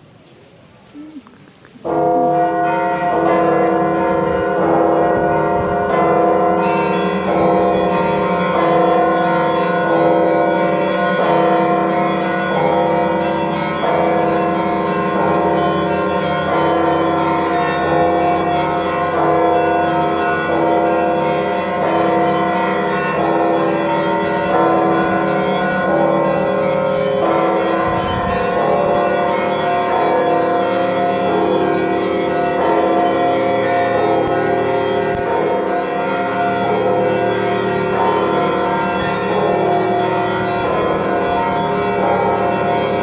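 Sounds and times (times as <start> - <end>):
low bell tone: 12.9 - 43.0.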